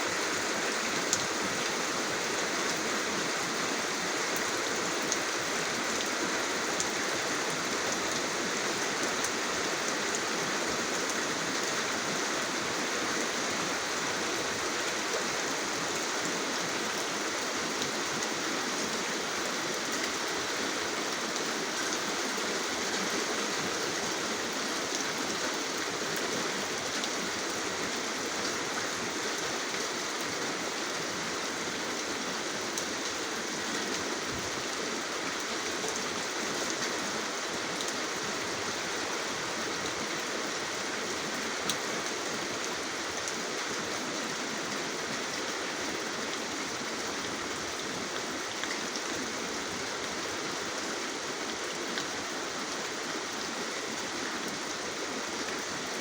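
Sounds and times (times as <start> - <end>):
steady rainfall hiss: 0.0 - 56.0.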